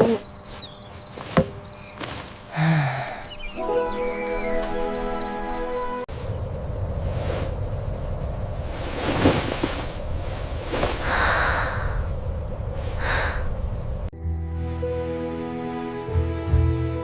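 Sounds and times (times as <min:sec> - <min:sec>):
rushing noise with low rumble: 0:06.1 - 0:14.1.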